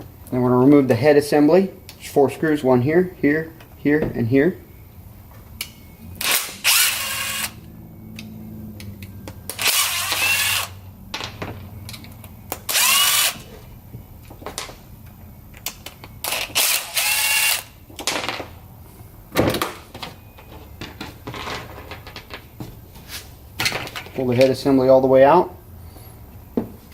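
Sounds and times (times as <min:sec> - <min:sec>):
impact driver spinning: 0:06.2 - 0:07.6, 0:09.5 - 0:10.8.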